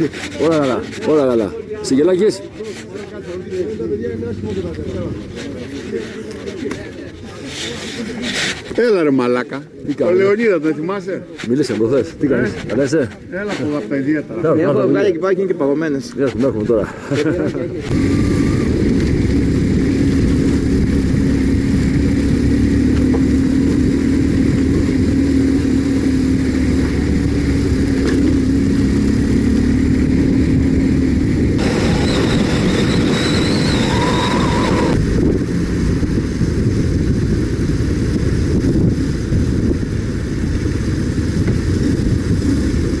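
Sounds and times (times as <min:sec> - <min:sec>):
motorcycle engine running: 0:17.9 - 0:43.0
wavering high whine: 0:31.6 - 0:35.1.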